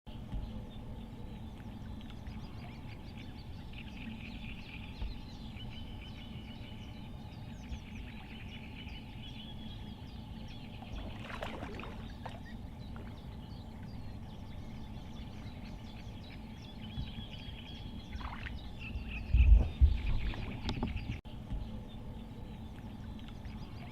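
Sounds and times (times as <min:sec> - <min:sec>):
low outdoor rumble: 0:00.1 - 0:23.9
small bird chirps and trills: 0:00.1 - 0:23.9.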